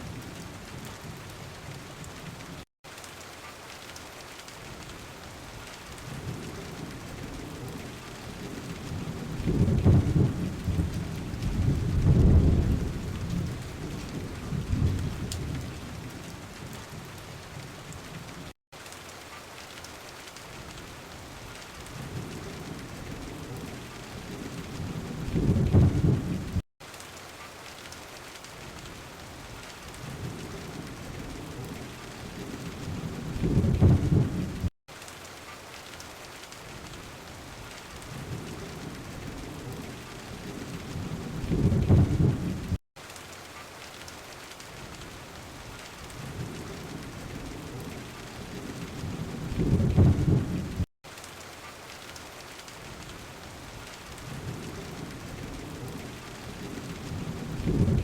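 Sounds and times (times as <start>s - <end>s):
heavy rain: 0.0s - 58.0s
rolling thunder: 6.1s - 16.1s, 21.9s - 26.6s, 30.0s - 34.7s, 38.0s - 42.8s, 46.1s - 50.9s, 54.2s - 58.0s.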